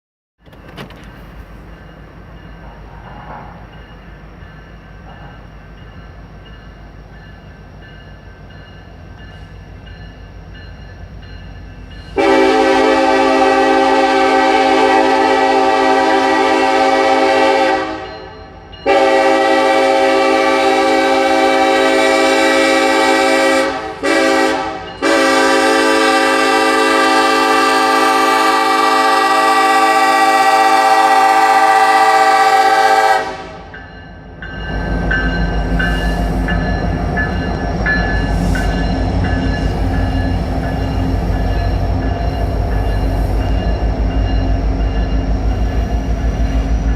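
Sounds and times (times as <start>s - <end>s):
diesel locomotives rumbling: 0.4s - 46.9s
train air horn blasts: 2.9s - 3.6s, 12.2s - 33.7s.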